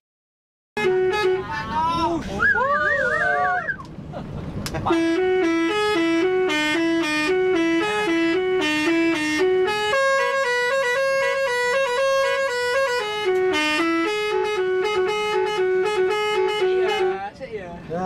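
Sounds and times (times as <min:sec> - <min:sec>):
multi-tone bus air horn melody: 0:00.8 - 0:01.8, 0:04.8 - 0:17.4.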